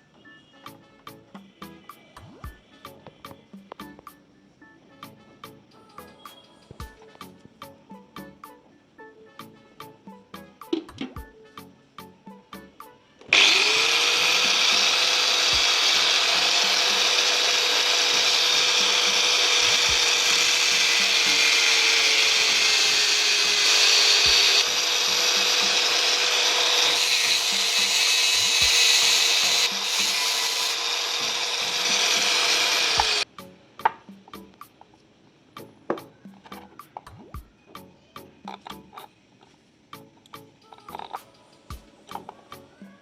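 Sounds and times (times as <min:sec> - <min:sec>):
electric power tool whine: 0:13.3 - 0:33.2.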